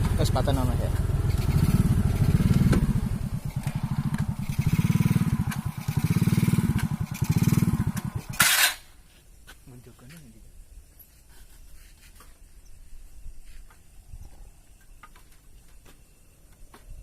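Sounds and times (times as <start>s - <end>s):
motorcycle engine running: 0.0s - 8.6s.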